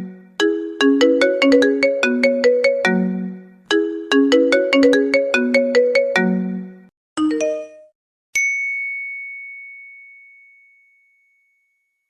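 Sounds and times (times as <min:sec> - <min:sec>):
melodic phone ringtone: 0:00.0 - 0:06.6
high bell-like ding: 0:08.4 - 0:12.0.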